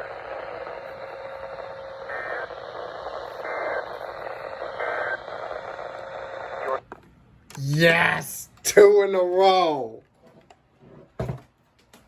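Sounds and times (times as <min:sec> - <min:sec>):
radio hiss: 0:00.0 - 0:06.8.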